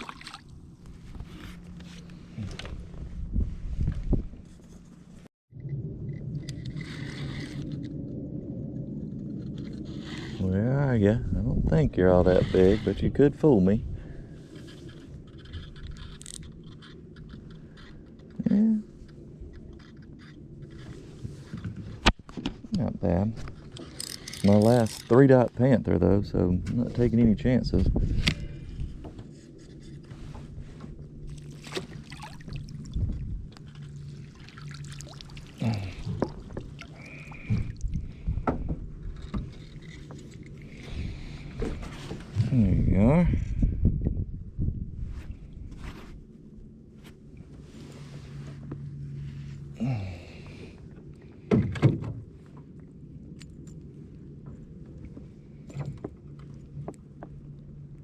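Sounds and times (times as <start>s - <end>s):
fishing reel clicks and knocks: 23.8s - 25.2s.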